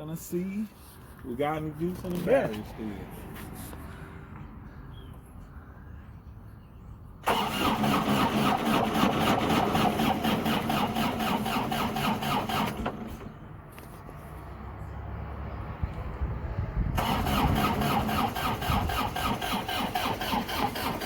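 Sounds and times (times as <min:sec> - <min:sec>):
diesel engine cranking: 0:07.2 - 0:15.0, 0:15.9 - 0:21.0.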